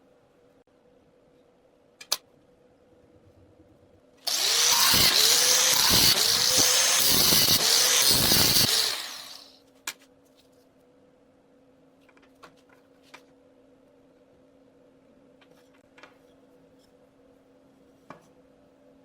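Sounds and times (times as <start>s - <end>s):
power tool grinding steel: 4.3s - 9.5s.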